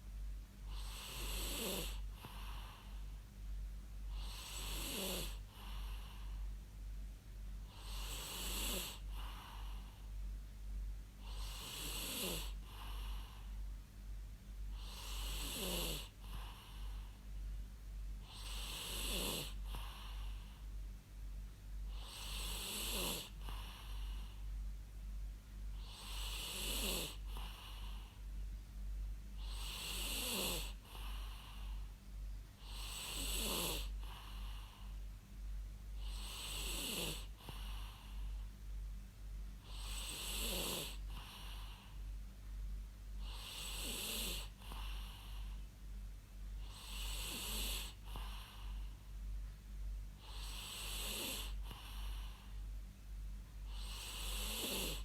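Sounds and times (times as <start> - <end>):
steady low hum: 0.0 - 55.0
person snoring: 0.7 - 3.0, 4.1 - 6.3, 7.7 - 9.9, 11.2 - 13.4, 14.8 - 17.0, 18.3 - 20.4, 21.9 - 24.4, 25.8 - 28.0, 29.4 - 31.8, 32.6 - 34.9, 36.0 - 38.3, 39.6 - 42.0, 43.2 - 45.5, 46.6 - 48.8, 50.2 - 52.5, 53.7 - 55.0.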